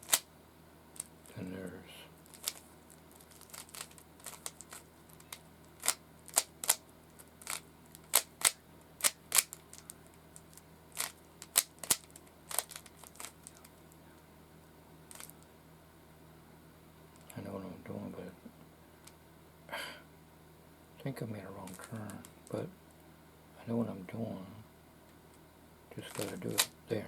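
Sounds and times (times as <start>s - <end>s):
puzzle cube plastic clicking: 0.0s - 0.3s, 2.3s - 2.6s, 3.3s - 13.7s, 15.1s - 15.4s, 26.1s - 26.7s.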